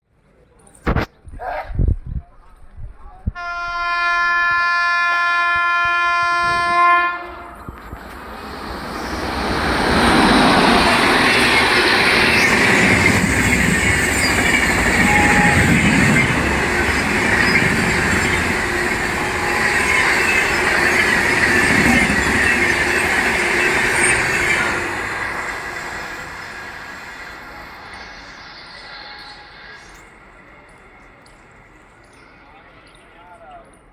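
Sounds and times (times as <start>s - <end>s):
train horn blast: 3.4s - 7.9s, 14.5s - 22.6s
train passing at high speed: 3.7s - 33.9s
wheels clacking over rail joints: 7.7s - 26.8s.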